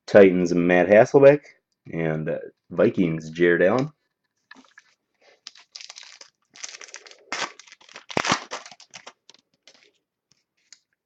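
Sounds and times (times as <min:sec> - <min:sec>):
foil pack rustling and crinkling: 0:04.5 - 0:10.0.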